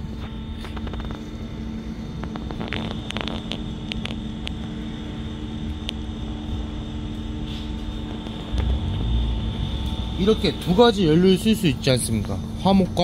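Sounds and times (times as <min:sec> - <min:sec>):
fire crackling in a stove: 0:00.0 - 0:13.0
mechanical hum: 0:00.0 - 0:13.0
low rumble: 0:07.8 - 0:11.8.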